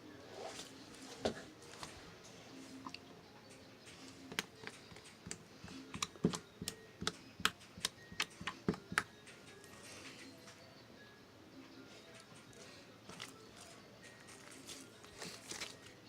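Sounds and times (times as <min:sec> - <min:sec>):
sharp clicks and taps: 0:03.5 - 0:09.6.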